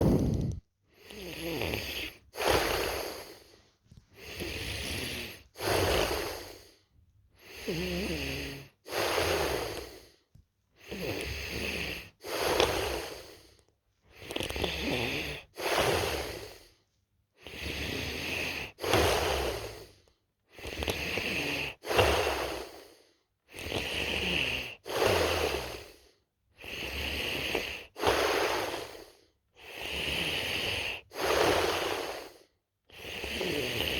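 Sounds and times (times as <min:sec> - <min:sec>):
person snoring: 0:00.0 - 0:03.6, 0:04.2 - 0:06.8, 0:07.4 - 0:10.2, 0:10.8 - 0:16.8, 0:17.4 - 0:33.9.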